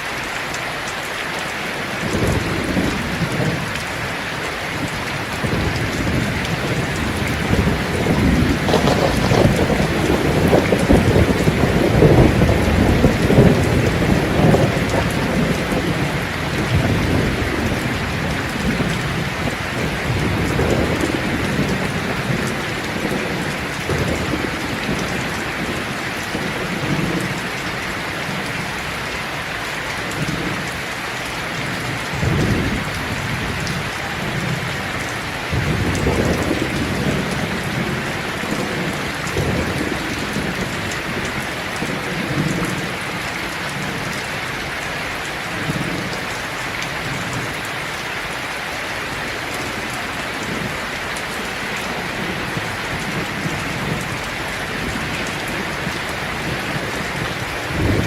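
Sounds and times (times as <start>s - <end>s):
steady rain falling: 0.0s - 58.0s
thunder rumbling: 4.8s - 27.5s, 31.6s - 44.2s, 51.8s - 58.0s.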